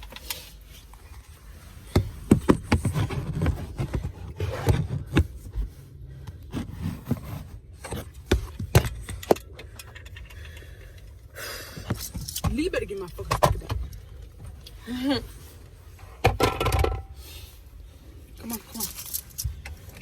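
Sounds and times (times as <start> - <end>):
knocks and thumps of handling: 1.8 - 10.6, 16.0 - 17.2.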